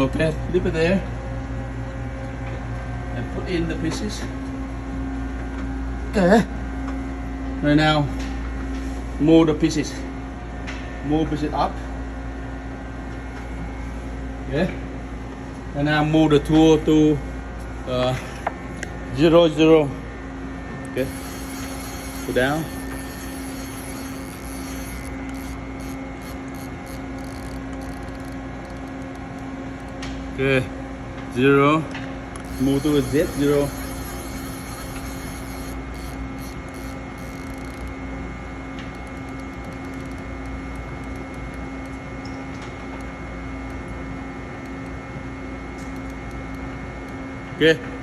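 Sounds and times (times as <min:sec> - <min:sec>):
lathe machine humming: 0:20.9 - 0:30.0, 0:32.4 - 0:37.9.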